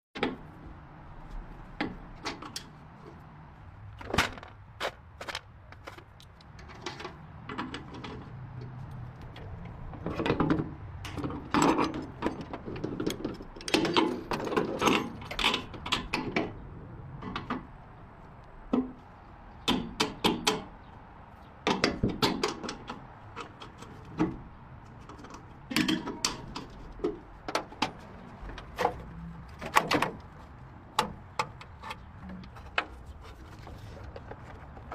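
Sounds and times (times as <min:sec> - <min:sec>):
knocks taps and clanks on vehicle: 0:18.7 - 0:19.0, 0:19.6 - 0:20.8, 0:21.6 - 0:34.9.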